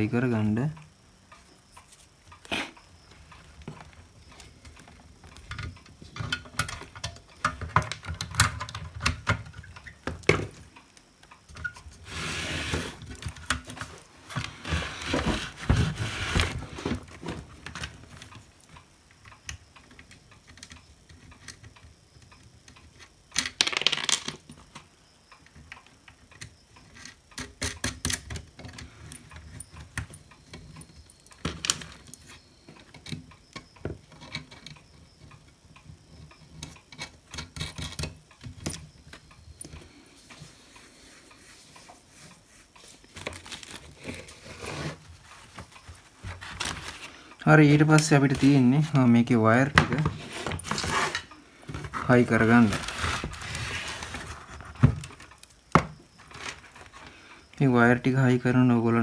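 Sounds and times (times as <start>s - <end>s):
rubbing and rustling: 11.7s - 18.3s, 40.2s - 55.3s
plastic parts clicking: 19.2s - 35.8s.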